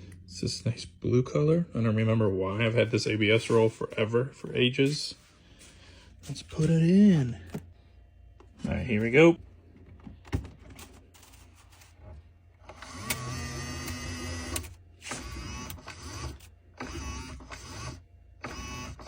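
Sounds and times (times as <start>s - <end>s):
feed motors whining: 12.6s - 19.0s.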